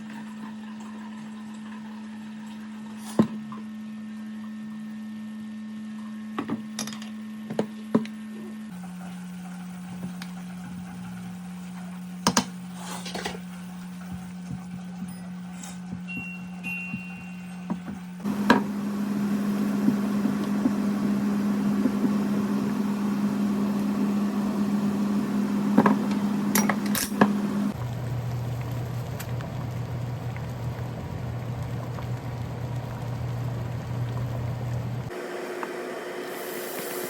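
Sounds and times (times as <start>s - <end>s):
electric appliance motor hum: 15.9s - 37.0s.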